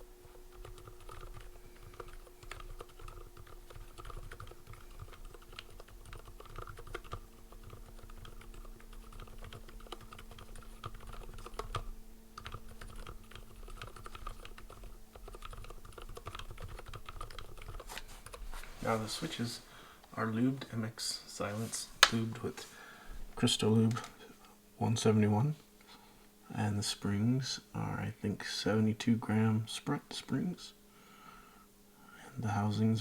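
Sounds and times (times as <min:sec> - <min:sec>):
mechanical keyboard typing: 0:00.3 - 0:18.4.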